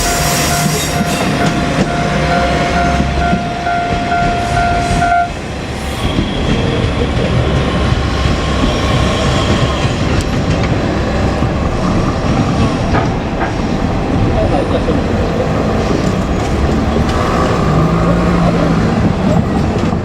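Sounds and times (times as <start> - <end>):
level crossing warning alarm: 0.0 - 5.5
diesel railcar rumbling: 0.0 - 20.0.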